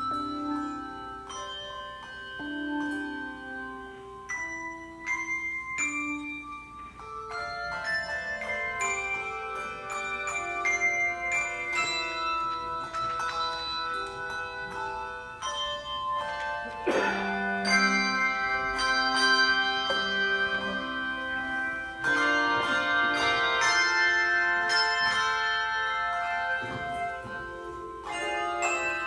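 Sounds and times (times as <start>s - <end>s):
handbell choir playing: 0.0s - 29.0s.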